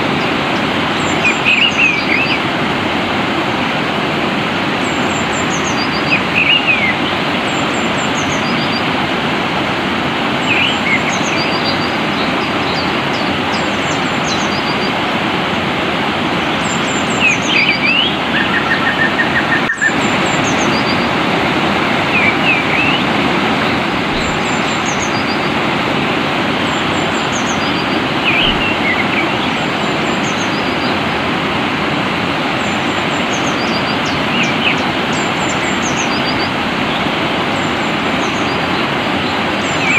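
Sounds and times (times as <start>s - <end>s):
rushing stream water: 0.0s - 39.9s
songbirds chirping: 16.4s - 31.2s
bird trill: 16.6s - 21.1s, 26.7s - 30.9s.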